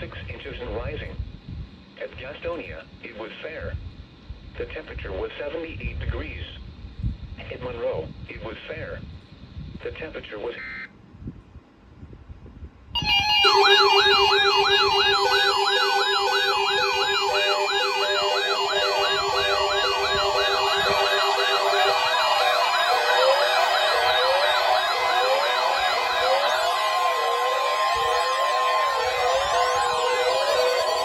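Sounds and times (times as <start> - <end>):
high warbles: 13.0 - 31.0
rapidly pulsing low beep: 13.0 - 31.0
siren-like wails: 13.0 - 31.0
steady alarm tone: 13.0 - 31.0.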